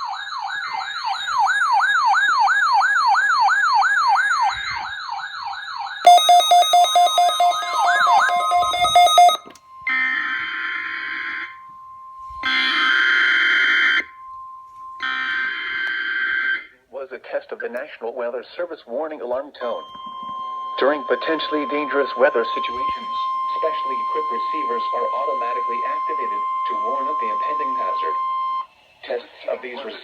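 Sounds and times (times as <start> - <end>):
pulsing two-pitch beep: 6.1 - 9.5
faint steady tone: 6.1 - 9.6
electronic siren wailing: 6.1 - 11.5.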